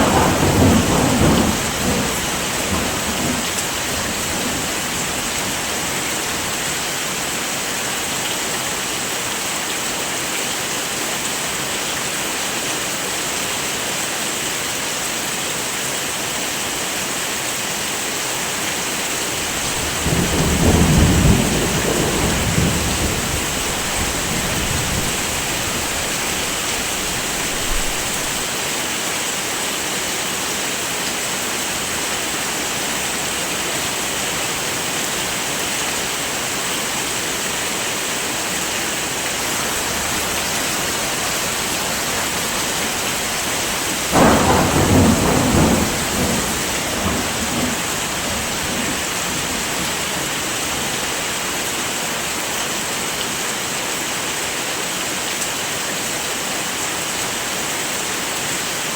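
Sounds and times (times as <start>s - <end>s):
low roll of thunder: 0.0s - 6.0s, 19.5s - 28.4s, 39.5s - 50.0s
heavy rain: 0.0s - 58.9s.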